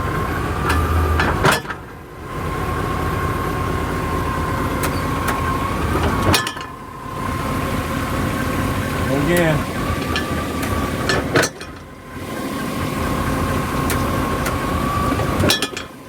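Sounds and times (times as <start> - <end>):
truck engine idling: 0.0 - 16.0
driveshaft clunk: 4.7 - 6.8, 8.2 - 12.0.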